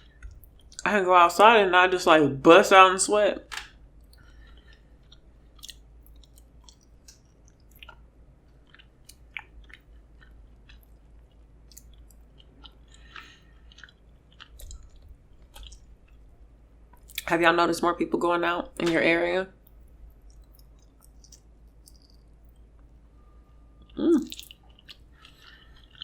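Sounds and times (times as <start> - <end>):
person chewing food: 0.0 - 0.8, 3.7 - 17.3, 19.6 - 26.0
wet mouth clicks: 20.2 - 22.2, 24.2 - 25.0.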